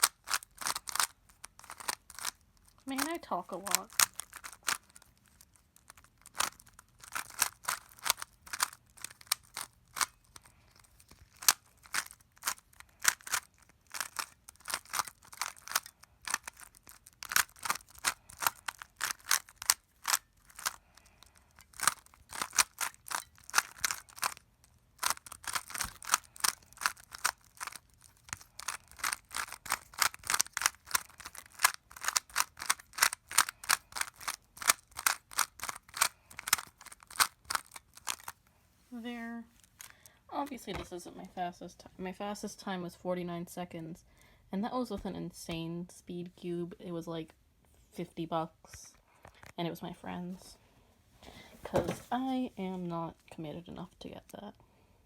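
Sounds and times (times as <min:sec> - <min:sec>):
puzzle cube layers clicking: 0:00.0 - 0:10.4, 0:11.1 - 0:38.4.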